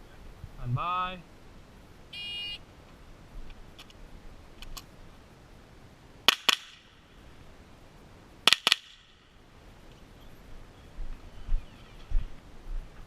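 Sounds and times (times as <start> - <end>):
rifle shots: 6.3 - 6.8, 8.5 - 9.1.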